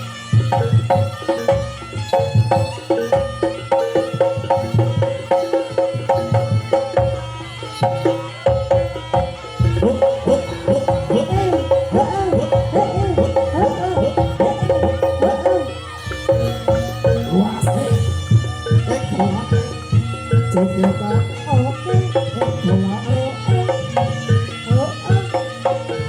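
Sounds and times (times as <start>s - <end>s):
hand drum strokes: 0.0s - 26.0s
reedy wind melody: 0.0s - 26.0s
held metallic note: 8.2s - 26.0s.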